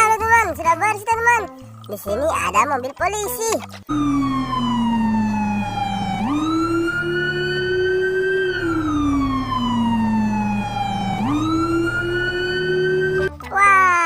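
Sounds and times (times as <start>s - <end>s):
steady low hum: 3.9s - 13.3s
police siren wailing: 3.9s - 13.4s.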